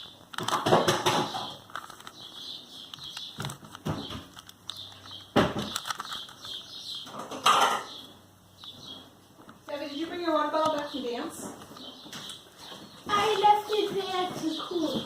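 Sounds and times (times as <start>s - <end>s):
plastic puzzle cube clicking: 1.6s - 7.0s.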